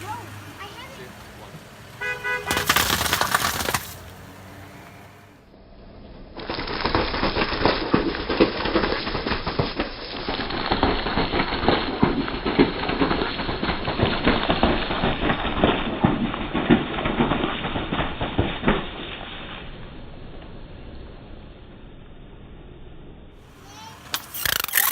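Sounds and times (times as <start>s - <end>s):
objects crunching under car tire: 2.3s - 4.2s.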